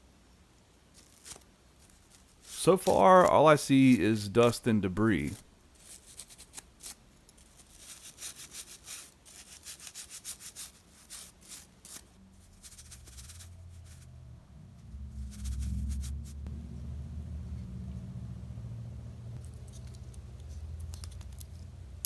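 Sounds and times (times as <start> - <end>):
low rumble: 12.2 - 22.0.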